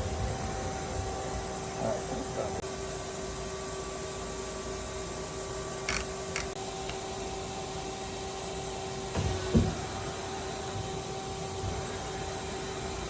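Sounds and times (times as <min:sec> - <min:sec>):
machine humming: 0:00.0 - 0:13.0
heavy machine clunk: 0:09.1 - 0:12.1.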